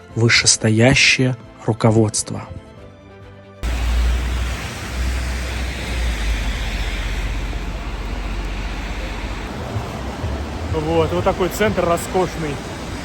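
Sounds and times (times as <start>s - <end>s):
passing traffic: 3.6s - 13.0s
wind buffeting microphone: 3.6s - 13.0s.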